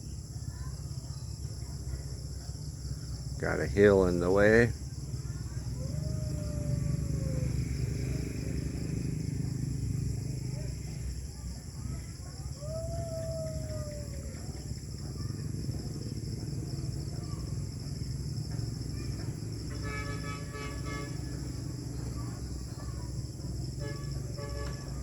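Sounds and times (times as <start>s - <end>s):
insects chorus: 0.0s - 25.0s
distant truck horns beeping: 19.0s - 21.8s, 23.7s - 25.0s.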